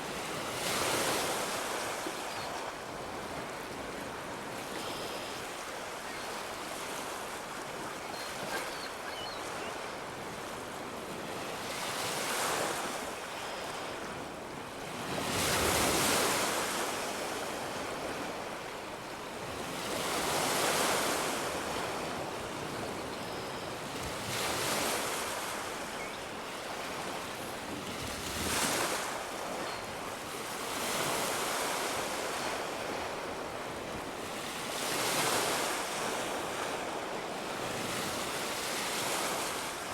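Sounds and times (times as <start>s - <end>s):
sea waves breaking on beach: 24.0s - 39.9s.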